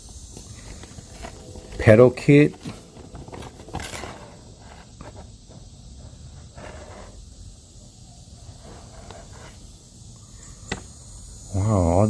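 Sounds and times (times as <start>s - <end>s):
paper pages rustling: 0.4s - 5.3s.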